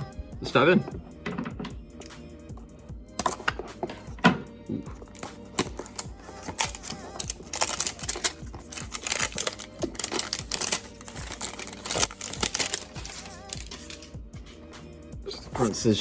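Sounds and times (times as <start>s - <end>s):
quiet background music: 0.0s - 16.0s
cardboard packaging crinkling: 4.9s - 14.2s.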